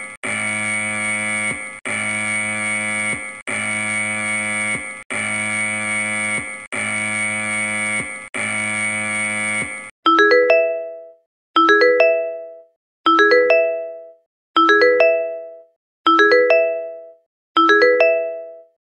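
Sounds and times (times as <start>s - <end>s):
harsh buzzing alarm tone: 0.0s - 10.0s.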